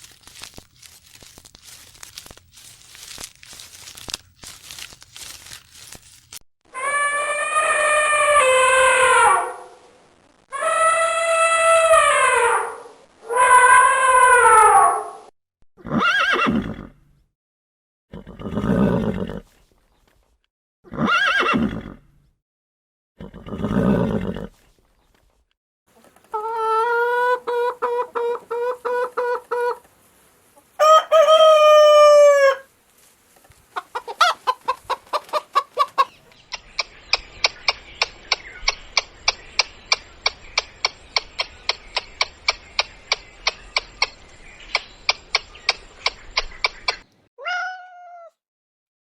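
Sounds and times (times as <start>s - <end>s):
chickens calling: 26.0s - 30.0s, 30.6s - 32.7s, 33.6s - 47.1s
chickens clucking: 26.0s - 30.0s, 33.6s - 47.1s
rooster crowing: 30.8s - 32.7s.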